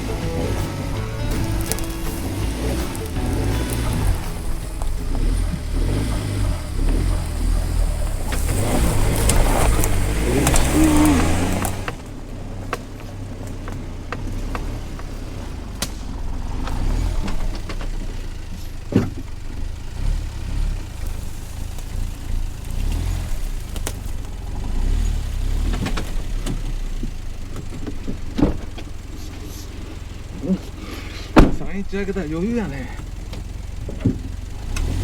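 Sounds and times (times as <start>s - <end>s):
car engine revving: 0.0s - 35.0s
sharp knocks and clunks: 31.3s - 31.8s.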